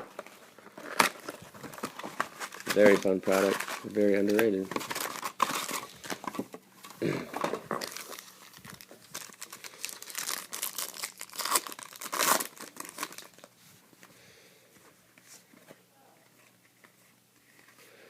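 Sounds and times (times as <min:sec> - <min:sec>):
packaging tearing and crinkling: 0:00.0 - 0:06.4, 0:07.5 - 0:13.5.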